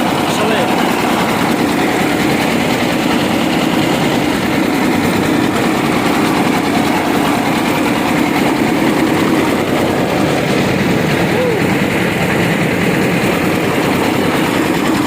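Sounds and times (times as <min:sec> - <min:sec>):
diesel engine running under load: 0:00.0 - 0:15.0.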